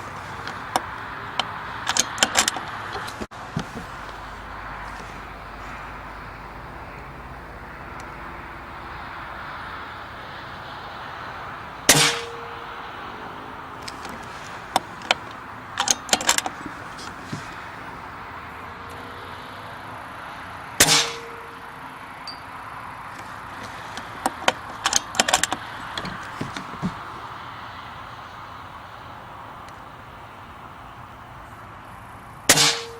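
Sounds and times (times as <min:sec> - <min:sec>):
air rifle shots: 0:11.8 - 0:12.5, 0:20.8 - 0:21.3, 0:32.5 - 0:32.9.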